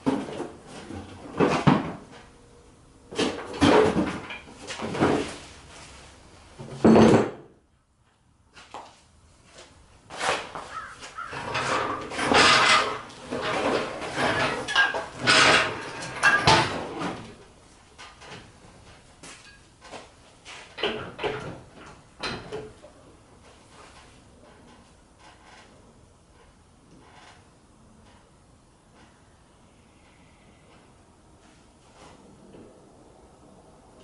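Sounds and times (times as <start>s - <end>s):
metal parts and tools clunking: 11.2s - 17.3s.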